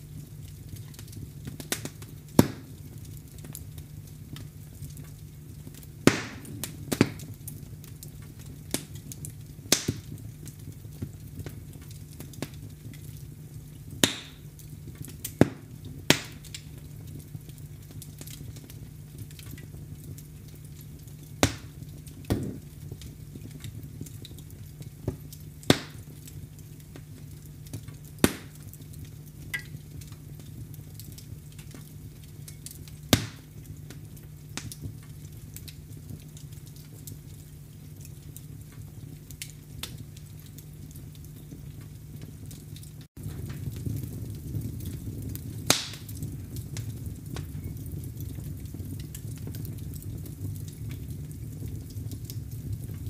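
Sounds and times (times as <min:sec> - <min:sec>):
fire crackling in a fireplace: 0:00.0 - 0:53.0
sharp pops: 0:02.4 - 0:02.7, 0:06.1 - 0:07.2, 0:09.7 - 0:10.0, 0:14.0 - 0:14.4, 0:15.4 - 0:16.4, 0:21.4 - 0:21.7, 0:25.1 - 0:26.0, 0:28.2 - 0:28.6, 0:45.7 - 0:46.0.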